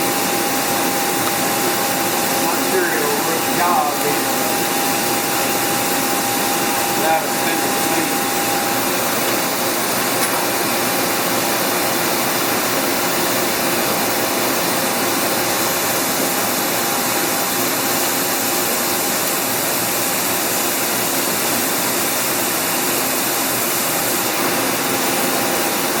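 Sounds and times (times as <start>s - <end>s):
thin machine whine: 0.0s - 14.1s.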